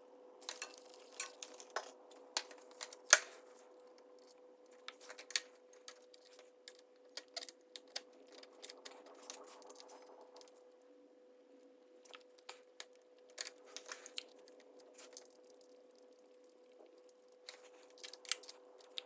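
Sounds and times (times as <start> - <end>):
faint steady hum: 0.0 - 19.0
small hard objects clicking: 0.4 - 10.5.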